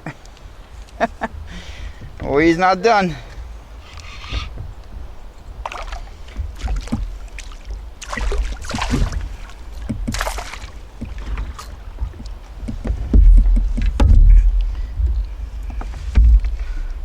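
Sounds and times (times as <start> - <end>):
wind rumble on microphone: 0.0 - 17.0
fish thrashing water splashing: 3.9 - 14.9.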